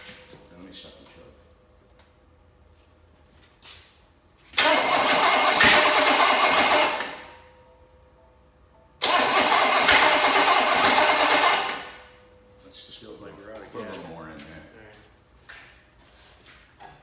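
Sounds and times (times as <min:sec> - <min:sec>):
engine cranked by starter: 0:04.6 - 0:07.4, 0:09.0 - 0:12.2.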